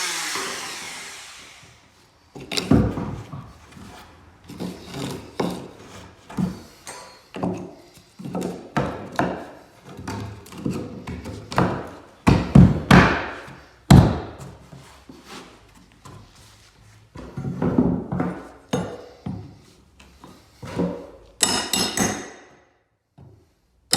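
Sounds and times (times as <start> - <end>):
knocks on wooden floorboards: 11.5 - 13.3.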